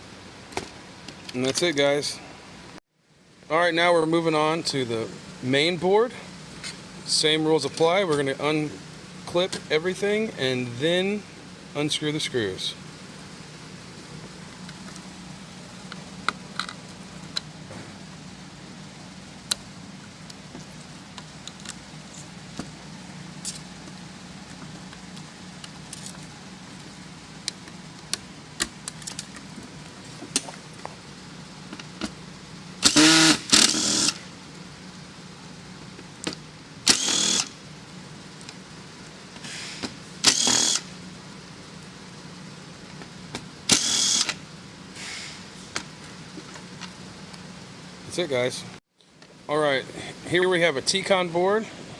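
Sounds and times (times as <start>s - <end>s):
electric screwdriver running: 32.8s - 34.2s, 36.9s - 37.6s, 40.2s - 40.9s, 43.7s - 44.4s.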